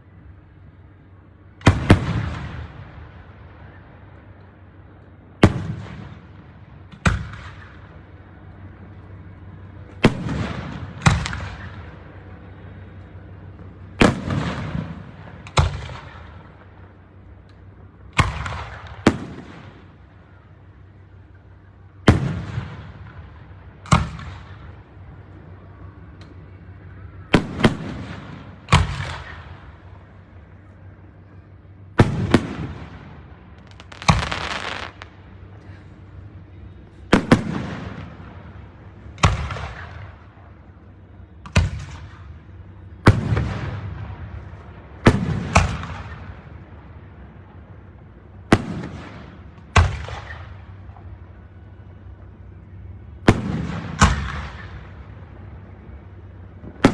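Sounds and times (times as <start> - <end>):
fireworks bursting with echoing bangs: 1.6 - 3.8, 5.4 - 8.3, 9.5 - 12.3, 13.4 - 17.0, 18.1 - 21.2, 21.8 - 25.3, 26.6 - 31.2, 31.8 - 40.8, 41.5 - 47.6, 48.4 - 51.4, 52.6 - 55.5, 56.4 - 56.9.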